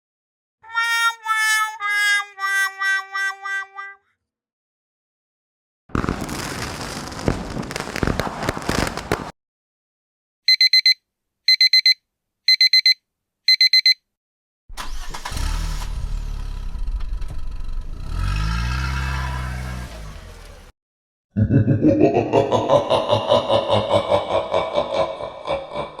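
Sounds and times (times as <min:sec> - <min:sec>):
dense crackling clatter: 0:06.0 - 0:09.3
alarm clock beeping: 0:10.5 - 0:14.0
car engine revving: 0:14.8 - 0:20.7.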